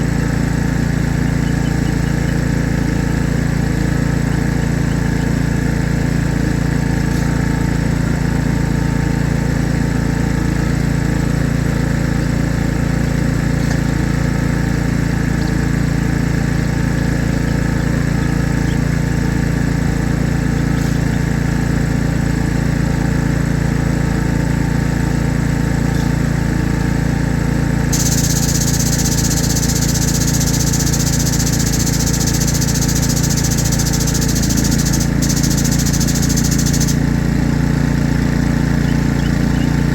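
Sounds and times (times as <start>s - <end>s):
engine running steadily: 0.0s - 39.9s
high-pitched hiss: 28.0s - 37.0s.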